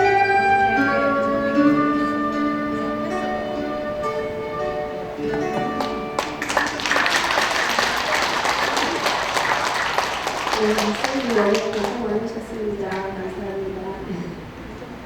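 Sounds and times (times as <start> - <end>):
soprano saxophone: 0.0 - 5.4
audience applauding: 5.7 - 12.3.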